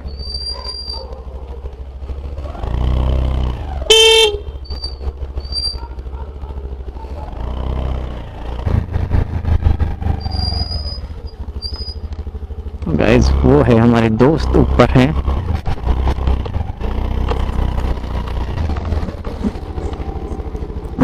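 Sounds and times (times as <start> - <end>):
engine and road drone: 0.0 - 21.0
vehicles passing: 0.0 - 21.0
vehicle horn toot: 3.8 - 4.8.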